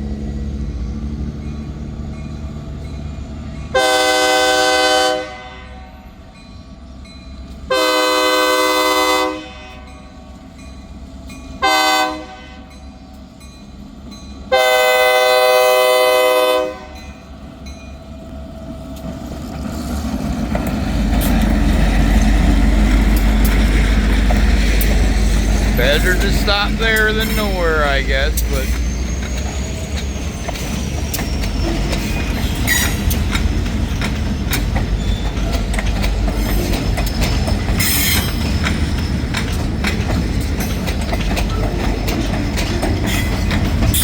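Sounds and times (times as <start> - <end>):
train low rumble: 0.0 - 44.0
locomotive air horn blasts: 3.7 - 6.0, 7.7 - 10.0, 11.6 - 12.8, 14.5 - 17.0.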